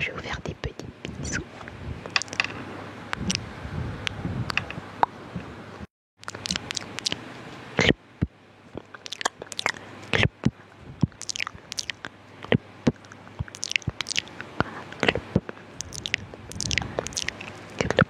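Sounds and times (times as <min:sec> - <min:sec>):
wet mouth clicks and smacks: 0:06.2 - 0:07.2, 0:08.8 - 0:10.3, 0:11.0 - 0:15.1, 0:15.8 - 0:18.0.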